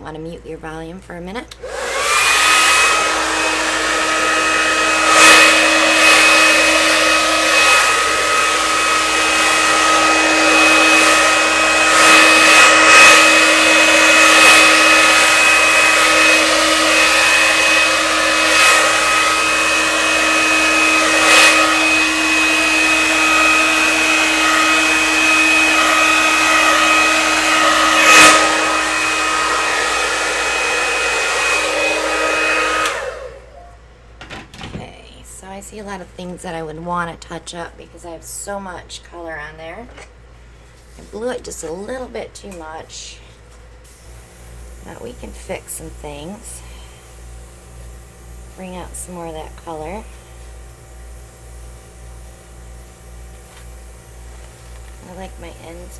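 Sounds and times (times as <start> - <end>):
hair dryer running: 1.5 - 33.6, 43.8 - 55.9.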